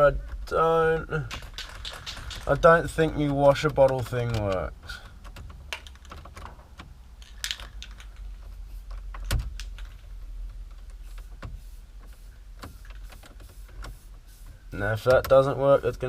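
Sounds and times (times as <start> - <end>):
light clicks and taps of parts: 1.2 - 14.1, 15.0 - 15.6.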